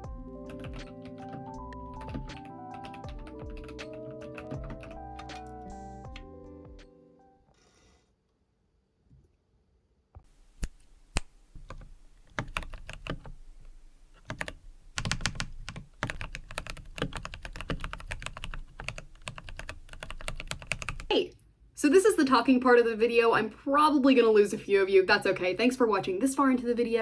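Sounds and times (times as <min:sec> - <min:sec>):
mechanical keyboard typing: 0:00.5 - 0:05.5, 0:10.5 - 0:21.1.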